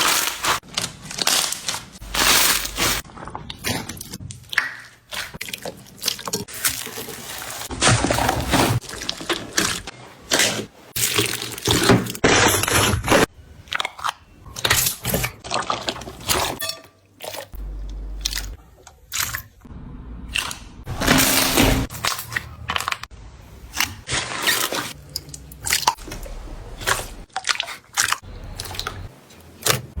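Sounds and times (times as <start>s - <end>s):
slime squishing: 0.0s - 12.2s.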